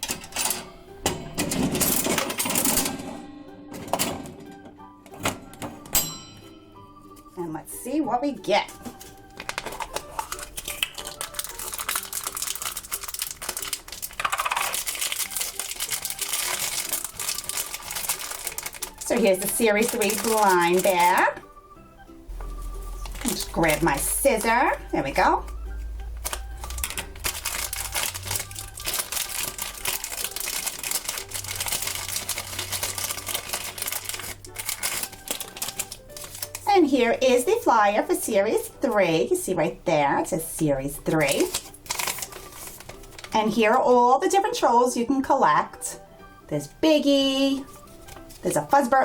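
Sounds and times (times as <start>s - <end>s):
coins clattering into machine: 0.0s - 0.7s, 1.4s - 3.2s, 11.2s - 19.4s
foil packet crinkling: 8.8s - 21.4s, 22.8s - 24.6s, 26.2s - 36.7s, 41.1s - 43.4s, 47.6s - 48.7s.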